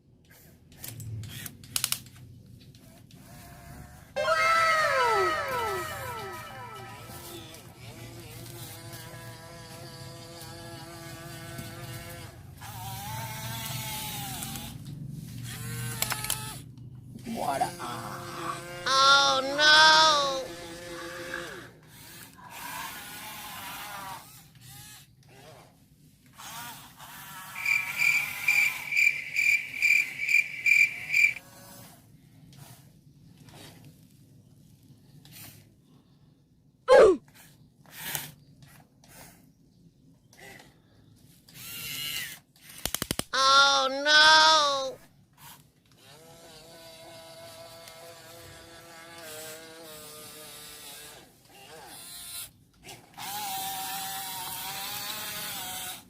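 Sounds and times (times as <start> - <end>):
toy electric motors whining: 0.3 - 2.1, 2.7 - 16.6, 17.2 - 25.6, 26.3 - 32.0, 41.3 - 56.0.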